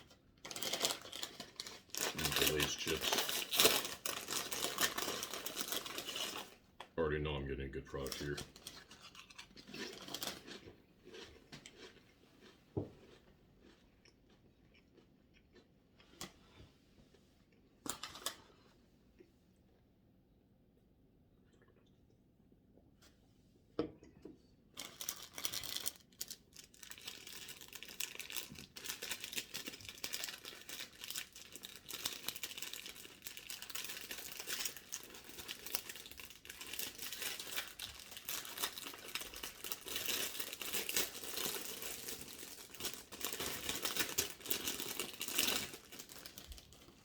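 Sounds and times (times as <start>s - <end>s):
food packaging crinkling: 0.0s - 6.7s, 8.0s - 12.0s, 17.9s - 18.5s, 24.8s - 47.0s.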